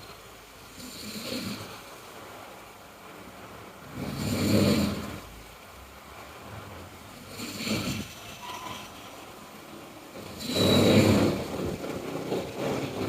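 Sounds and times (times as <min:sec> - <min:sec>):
person snoring: 0:00.7 - 0:01.8, 0:03.9 - 0:05.2, 0:07.2 - 0:08.3, 0:10.2 - 0:11.7.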